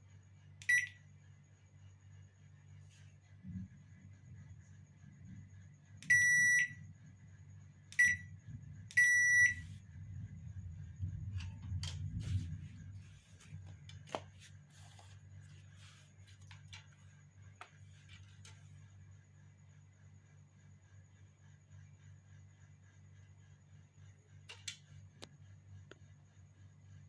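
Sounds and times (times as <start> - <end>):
low hum: 0.2 - 19.3.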